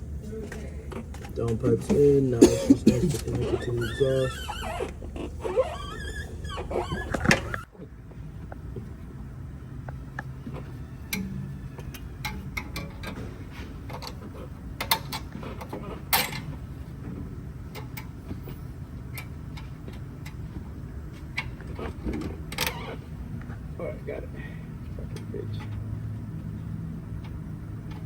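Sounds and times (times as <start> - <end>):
steady low hum: 0.0 - 28.0
metal clicks and clanks of tools: 11.1 - 16.6, 17.7 - 20.6.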